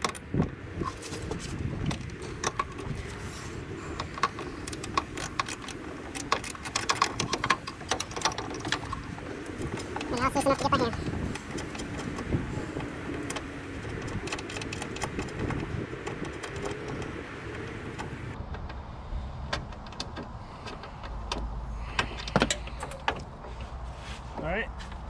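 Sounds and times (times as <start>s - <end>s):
metallic tool clicks and rattles: 4.0s - 12.3s.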